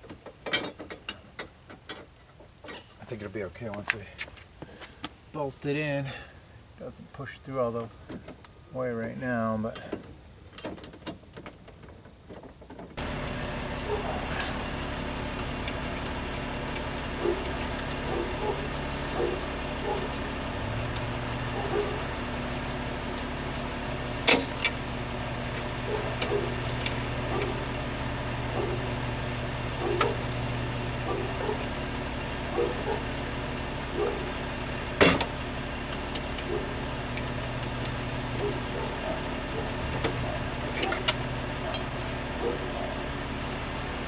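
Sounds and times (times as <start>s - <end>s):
engine-like hum: 13.0s - 44.0s
light metallic clicks and clinks: 41.7s - 42.2s.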